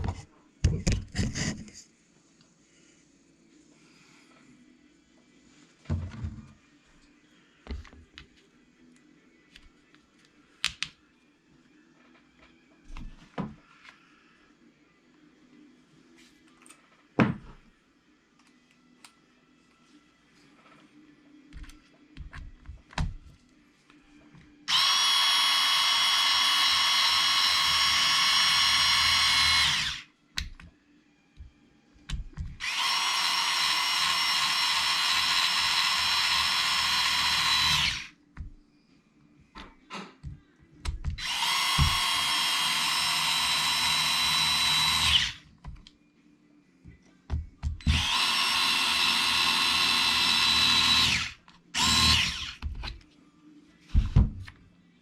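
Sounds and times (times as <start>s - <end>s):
power drill running: 24.7s - 30.0s, 32.6s - 38.1s, 41.2s - 45.4s, 47.8s - 52.6s.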